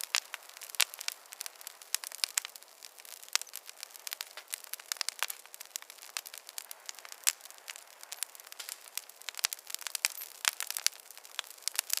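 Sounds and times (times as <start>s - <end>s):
wood fire crackling: 0.0s - 12.0s.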